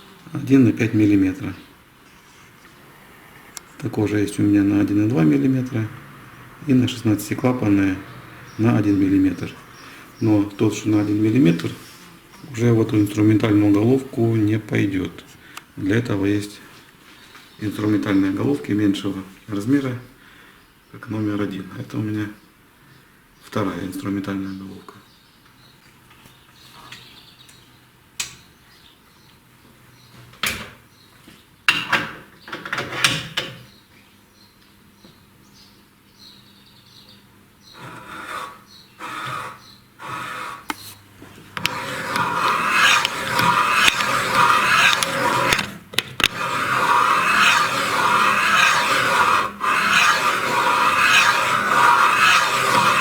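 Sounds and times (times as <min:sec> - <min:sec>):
cutter scraping squeal: 0:37.8 - 0:40.8, 0:41.6 - 0:53.0.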